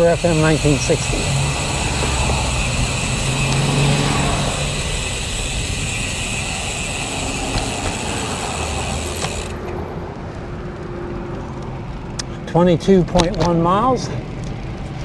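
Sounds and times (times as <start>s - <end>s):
car engine running: 0.0s - 9.8s
wind and road noise: 0.0s - 15.0s.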